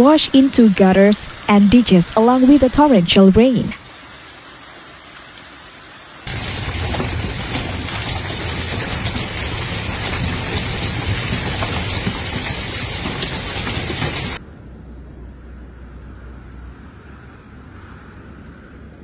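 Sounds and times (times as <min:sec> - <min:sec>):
heavy rain and hail pelting: 0:00.0 - 0:14.4.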